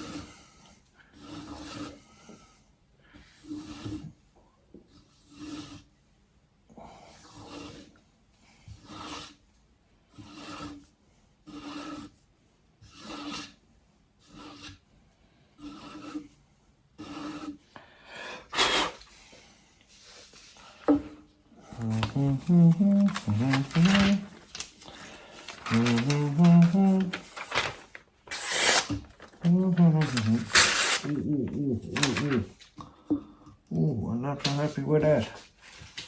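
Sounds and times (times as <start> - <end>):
sharpening stone rasping on knife: 11.5 - 12.1, 12.9 - 13.6, 14.2 - 14.8, 15.6 - 16.2, 17.0 - 17.6.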